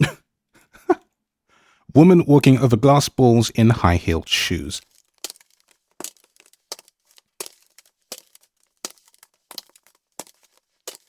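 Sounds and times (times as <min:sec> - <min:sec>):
high-heeled footsteps on glass balls: 0:04.8 - 0:11.0.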